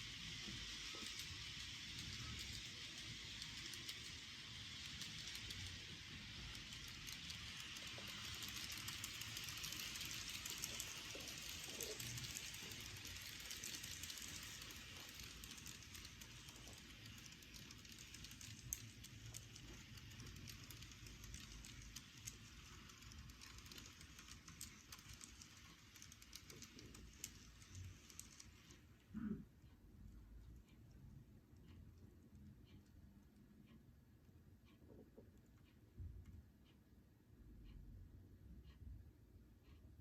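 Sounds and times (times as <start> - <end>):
model train rolling hiss: 0.0 - 29.0
wheels ticking on rails: 0.0 - 29.3.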